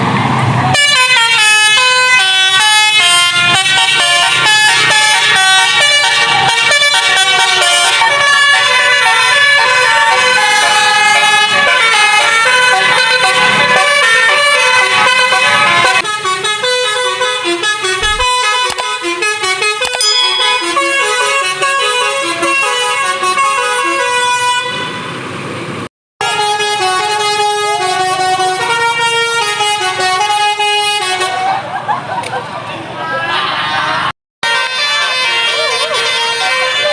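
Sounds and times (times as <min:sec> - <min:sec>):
bus musical horn melody: 0:00.7 - 0:17.5, 0:21.3 - 0:25.2, 0:26.2 - 0:31.5, 0:34.5 - 0:36.9.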